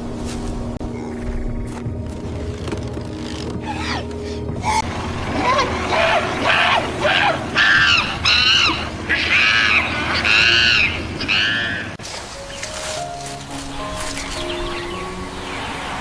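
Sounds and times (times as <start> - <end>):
background music: 0.0 - 16.0
squawking animal calls: 3.6 - 12.0.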